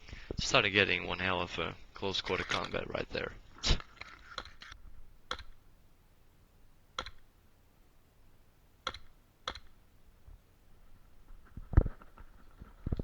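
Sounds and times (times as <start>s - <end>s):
airsoft gun shots: 8.8s - 9.8s.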